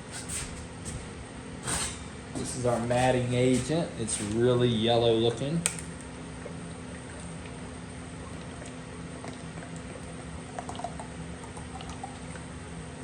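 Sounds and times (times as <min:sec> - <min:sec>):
low steady hum: 0:00.0 - 0:13.0
liquid pouring into plastic cup: 0:08.2 - 0:12.5.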